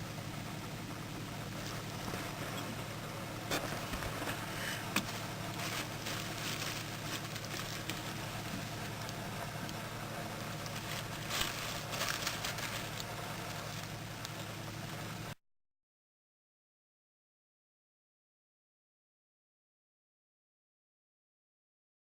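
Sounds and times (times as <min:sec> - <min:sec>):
low hum: 0:00.0 - 0:15.4
scratchy rustles: 0:01.4 - 0:02.8, 0:03.4 - 0:14.6.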